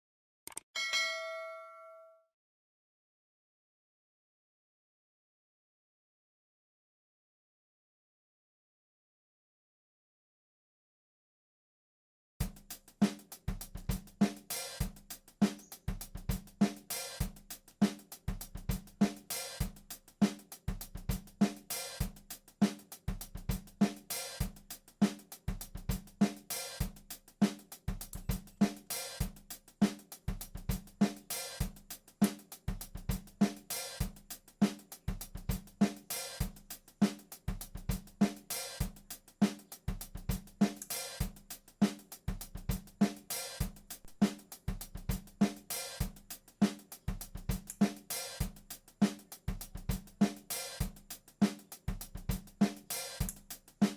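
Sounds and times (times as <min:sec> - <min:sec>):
drum kit beat: 0:12.4 - 0:53.9.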